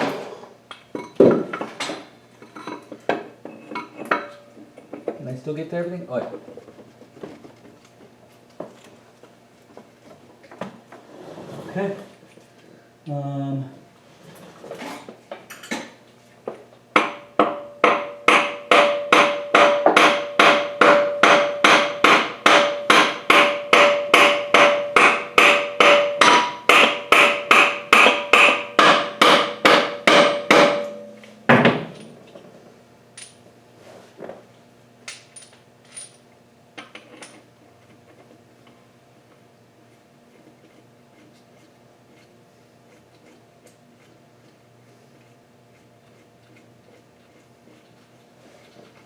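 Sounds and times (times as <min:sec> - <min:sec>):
hammer striking metal: 0:17.0 - 0:32.1.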